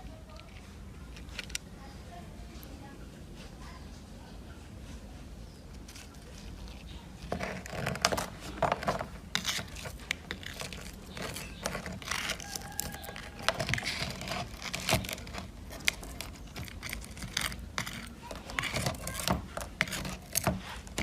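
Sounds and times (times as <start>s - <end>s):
crinkling tearing and scraping: 5.7s - 21.0s.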